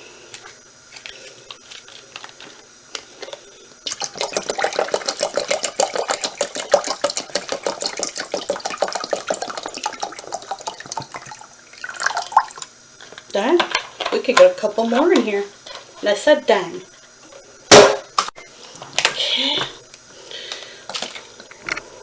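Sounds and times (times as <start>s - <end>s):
water pouring into plastic reservoir: 3.8s - 12.7s.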